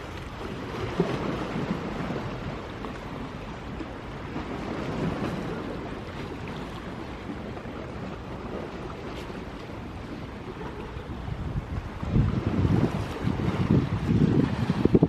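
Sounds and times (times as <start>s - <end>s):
sea waves washing ashore: 0.0s - 15.0s
wind rumbling on microphone: 0.0s - 15.0s.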